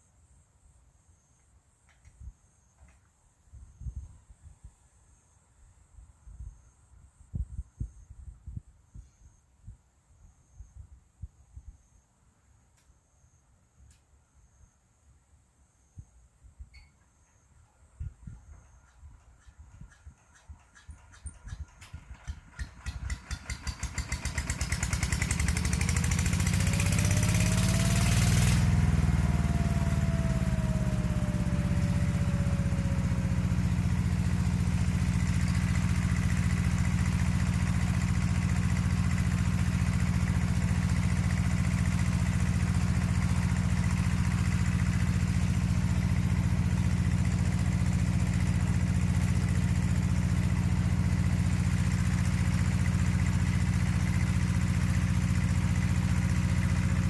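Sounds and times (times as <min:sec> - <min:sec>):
diesel engine running: 0:20.8 - 0:57.0.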